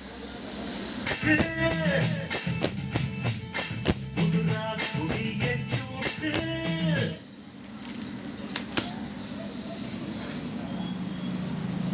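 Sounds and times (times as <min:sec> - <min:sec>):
song with shaker and tambourine beat: 0:01.0 - 0:07.2.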